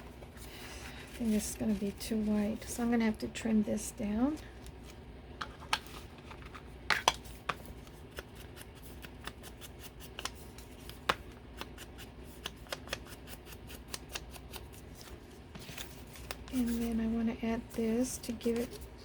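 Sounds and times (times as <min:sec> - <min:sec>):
scissors cutting paper: 0:08.1 - 0:15.1.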